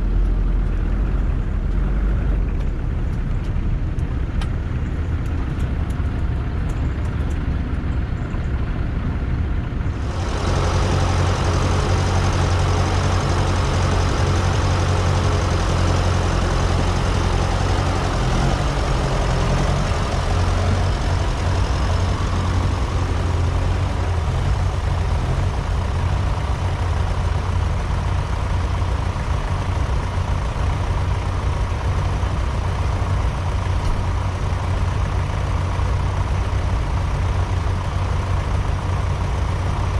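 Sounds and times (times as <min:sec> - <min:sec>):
vehicle engine running: 0:00.0 - 0:39.9.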